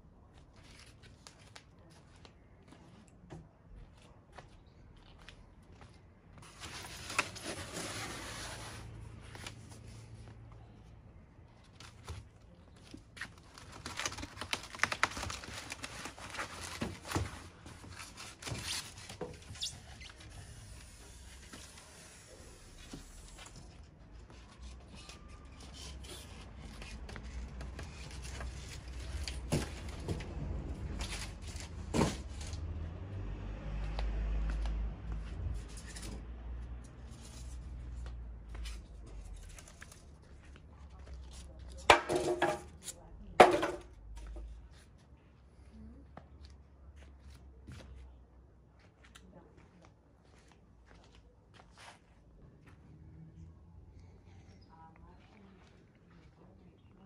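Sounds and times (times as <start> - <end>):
packaging rustling and tearing: 13.3 - 19.1.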